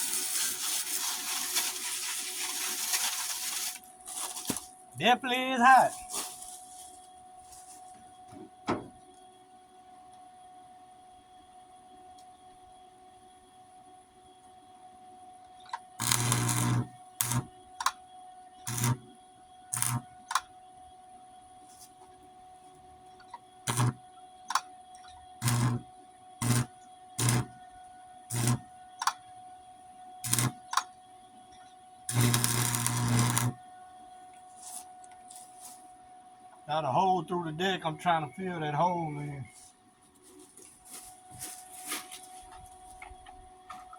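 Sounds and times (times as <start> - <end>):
arc welding buzz: 0.0 - 4.7, 15.7 - 18.0, 18.6 - 20.5, 23.6 - 24.7, 25.4 - 29.2, 30.2 - 30.9, 32.1 - 33.7
faint steady hum: 0.0 - 43.9
welder click: 16.0 - 18.0, 18.7 - 19.0, 19.8 - 20.5, 23.7 - 24.6, 25.4 - 25.8, 26.4 - 27.5, 28.3 - 29.2, 30.2 - 30.9, 32.1 - 33.6.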